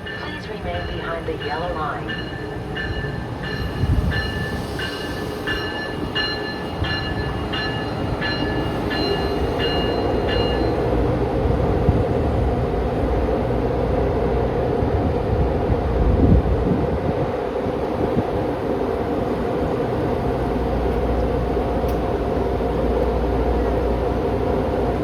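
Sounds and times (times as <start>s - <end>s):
train bell ringing: 0.0s - 11.0s
train rumbling: 0.0s - 25.0s.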